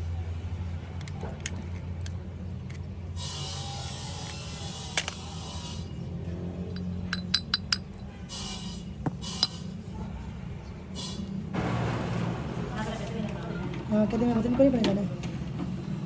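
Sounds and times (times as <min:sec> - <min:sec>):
metal pieces clinking: 0:06.7 - 0:08.1, 0:09.0 - 0:09.9.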